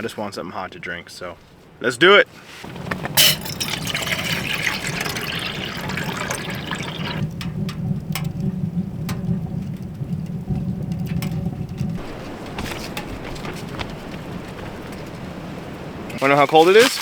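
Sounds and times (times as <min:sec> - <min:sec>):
water pouring into a pot: 0:02.7 - 0:12.2
steady low rumble: 0:02.7 - 0:16.2.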